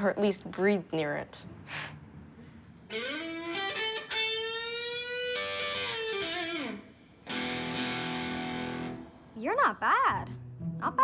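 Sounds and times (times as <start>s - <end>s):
electric guitar solo: 2.9s - 9.2s.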